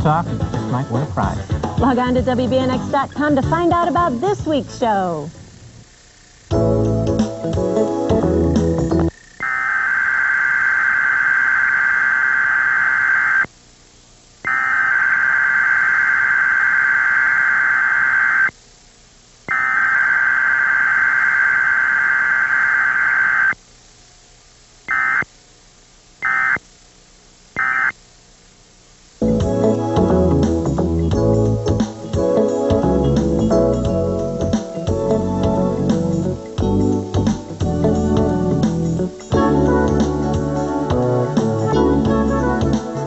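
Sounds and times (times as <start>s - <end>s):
shrill warbling electronic tone bursts: 9.2s - 13.5s, 14.4s - 18.5s, 19.5s - 23.6s, 24.9s - 25.3s, 26.2s - 26.6s, 27.6s - 28.0s.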